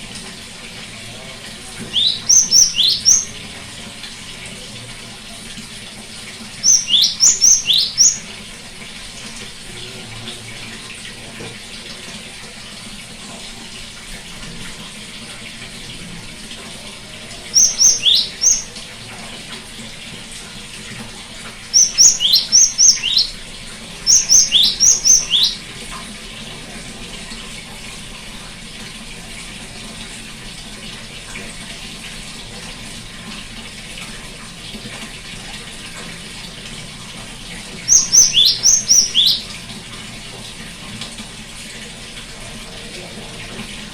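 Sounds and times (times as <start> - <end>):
bird sharp repeated notes: 1.9 - 3.4, 6.6 - 8.3, 17.5 - 18.8, 21.7 - 23.4, 24.0 - 25.7, 37.9 - 39.5.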